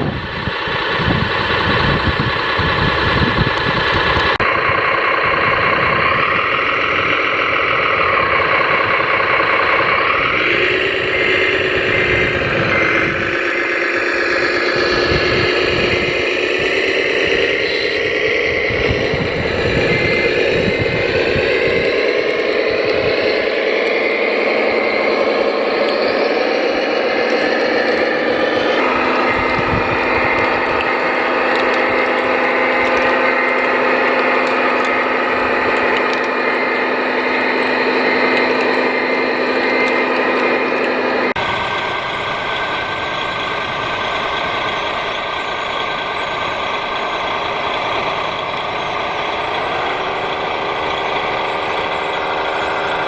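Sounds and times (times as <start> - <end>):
motors and hydraulics whining: 0.0 - 53.0
scraping and rattling: 8.6 - 41.4.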